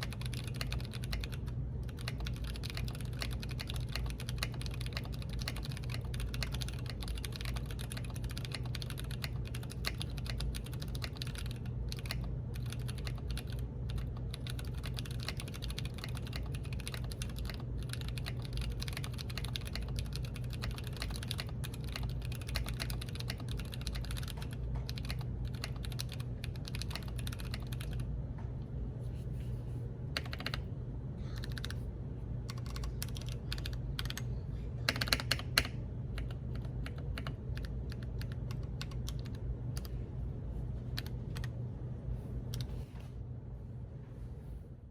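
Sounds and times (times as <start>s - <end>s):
mechanical keyboard typing: 0.0s - 28.1s, 30.1s - 30.6s, 31.4s - 31.8s, 32.5s - 34.3s, 34.9s - 39.9s.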